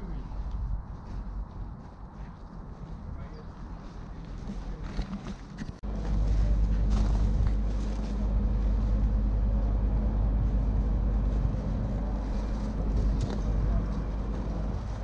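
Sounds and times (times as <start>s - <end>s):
diesel engine rumbling: 5.8s - 15.0s.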